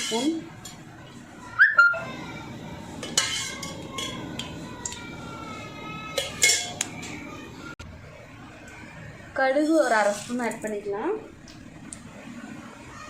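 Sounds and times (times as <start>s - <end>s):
metal spoon clinking on steel vessels: 3.0s - 5.0s, 6.1s - 7.2s.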